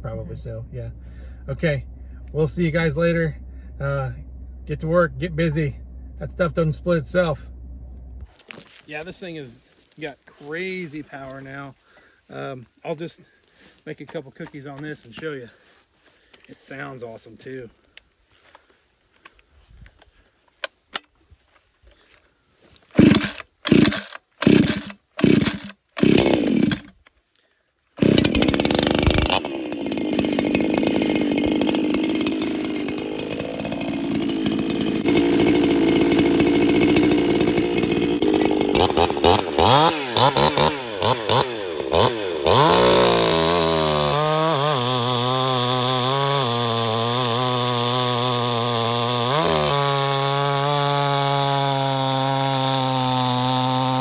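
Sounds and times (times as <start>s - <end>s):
chainsaw cutting a log: 23.0s - 27.0s, 28.0s - 54.0s.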